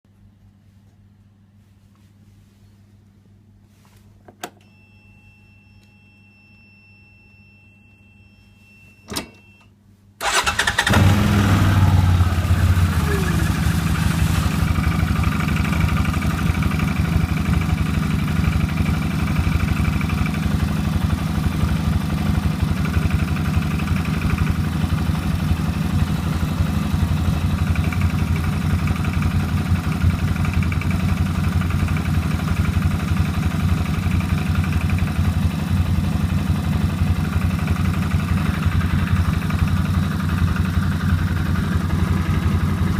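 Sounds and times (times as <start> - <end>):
atv engine idling: 10.2 - 42.9.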